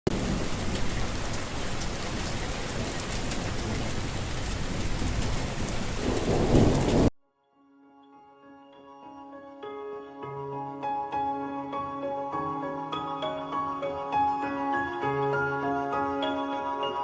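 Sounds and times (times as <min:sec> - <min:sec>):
heavy rain: 0:00.1 - 0:07.1
low rumble of thunder: 0:00.1 - 0:07.1
soft music with held notes: 0:07.2 - 0:17.0.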